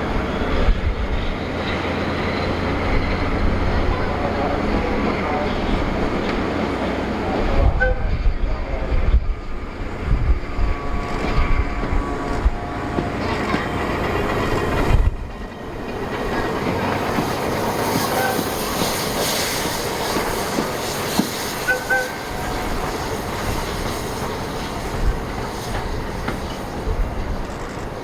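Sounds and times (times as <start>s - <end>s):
train wheels clattering: 9.9s - 28.0s.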